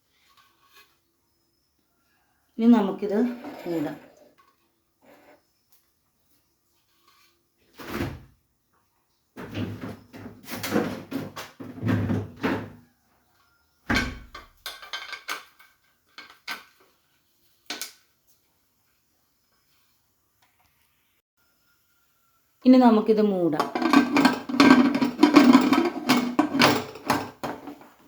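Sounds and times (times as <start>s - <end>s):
metal clattering and scraping: 23.6s - 28.0s.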